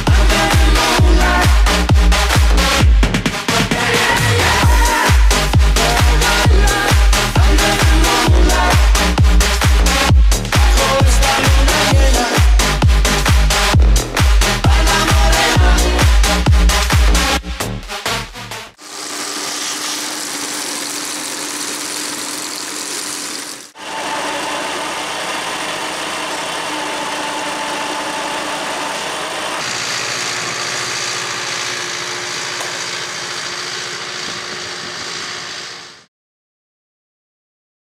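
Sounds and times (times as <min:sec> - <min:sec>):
tractor engine running: 0:18.8 - 0:36.0.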